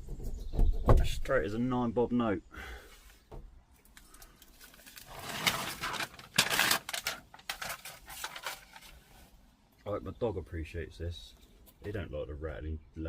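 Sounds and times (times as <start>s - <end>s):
scraping and crackling of adhesive mat: 4.6s - 9.0s.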